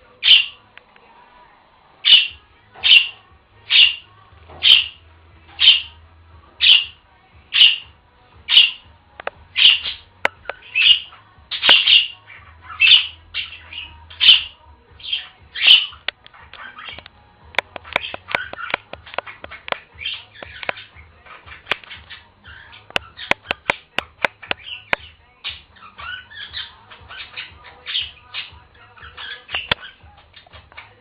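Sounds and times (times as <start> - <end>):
budgerigar short calls: 2.0 - 4.0, 5.6 - 5.9.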